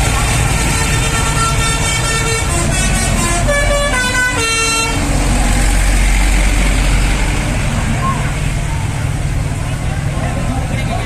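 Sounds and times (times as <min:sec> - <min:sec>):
low engine rumble: 0:00.0 - 0:11.0
road noise: 0:00.0 - 0:11.0
musical air horn: 0:00.5 - 0:05.0.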